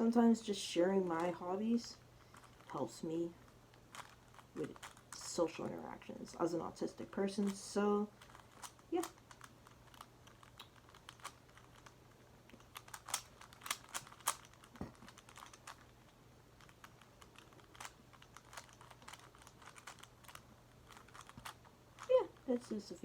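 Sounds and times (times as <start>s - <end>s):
faint low hum: 0.0s - 23.0s
plastic puzzle clicking: 3.7s - 5.4s, 7.4s - 22.2s.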